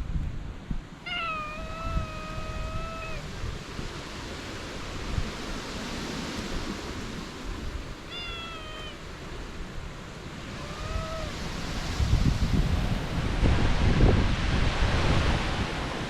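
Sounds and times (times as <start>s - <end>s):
cat meowing: 1.0s - 3.4s, 8.0s - 9.4s, 10.4s - 11.9s.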